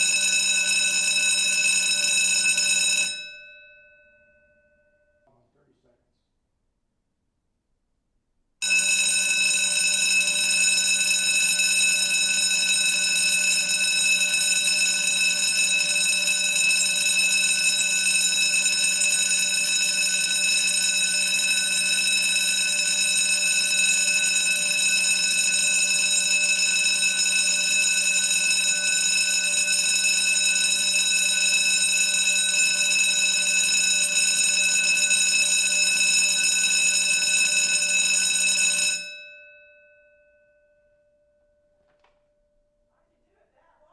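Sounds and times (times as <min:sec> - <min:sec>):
school bell ringing: 0:00.0 - 0:05.2, 0:08.6 - 0:41.0.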